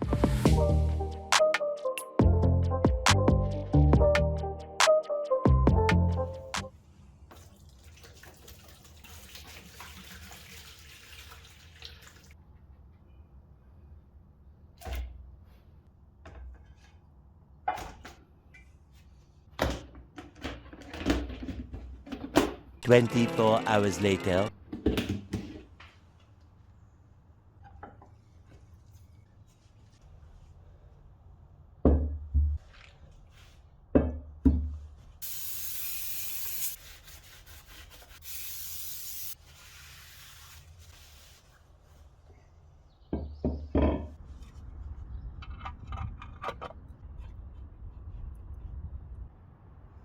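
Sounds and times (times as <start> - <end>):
spraying hiss: 35.2 - 36.8, 38.2 - 39.4.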